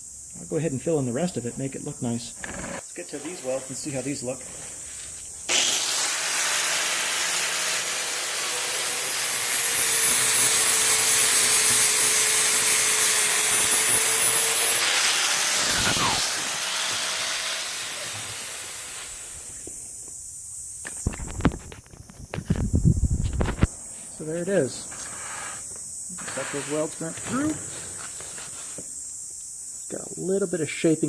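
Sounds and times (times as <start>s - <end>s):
angle grinder grinding metal: 5.5s - 19.6s, 24.9s - 28.8s.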